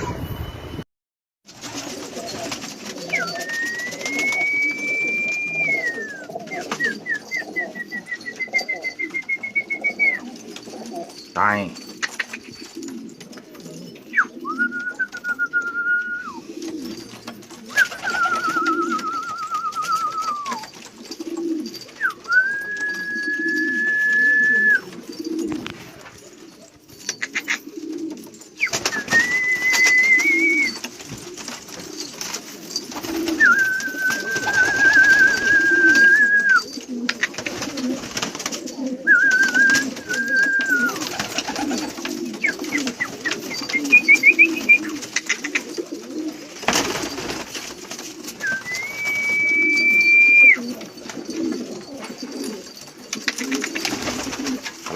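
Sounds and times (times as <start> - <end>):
pigeons cooing: 1.6 - 54.9
warbling high whistles: 3.0 - 10.3, 21.9 - 25.2, 28.6 - 30.8, 32.7 - 36.8, 39.1 - 41.8, 48.4 - 50.7.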